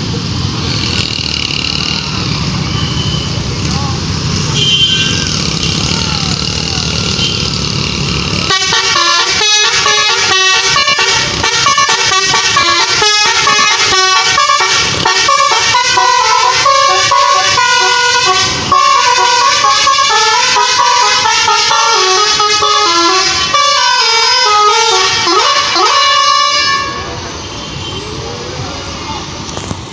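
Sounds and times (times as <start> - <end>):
bus horn playing melody: 4.4 - 6.0, 7.0 - 28.0.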